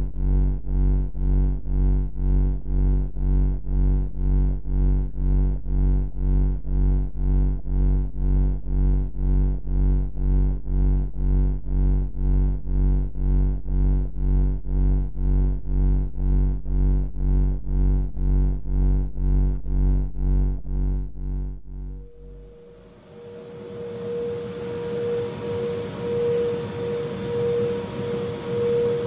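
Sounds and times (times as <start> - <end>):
pulsing electronic drone: 17.8 - 29.0.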